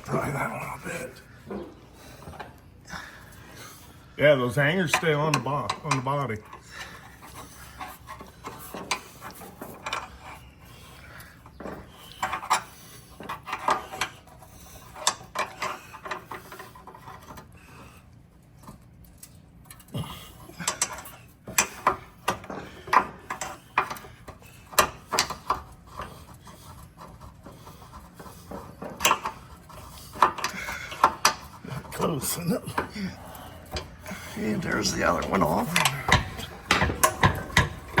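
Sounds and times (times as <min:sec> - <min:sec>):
pry bar clinking on metal: 0:34.6 - 0:38.0.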